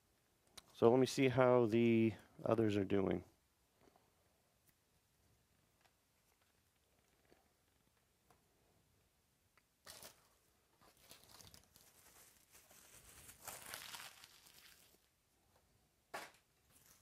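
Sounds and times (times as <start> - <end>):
packaging crinkling and rustling: 9.8 - 15.1, 16.6 - 17.0.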